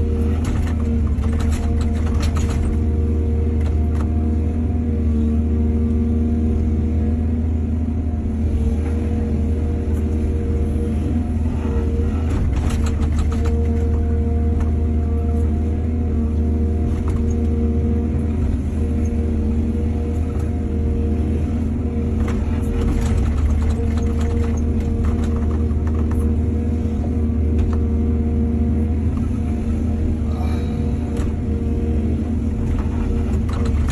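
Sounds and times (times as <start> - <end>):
excavator diesel engine running: 0.0 - 33.9.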